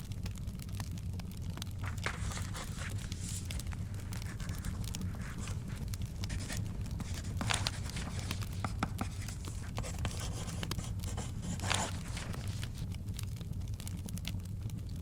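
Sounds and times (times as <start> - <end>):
fire crackling and popping: 0.0 - 15.0
paper pages rustling: 1.6 - 13.0.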